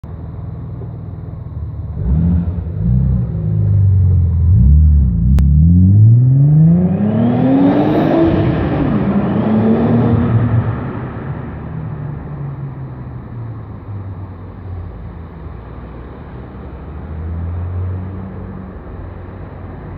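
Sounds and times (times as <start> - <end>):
car engine revving: 1.9 - 11.3.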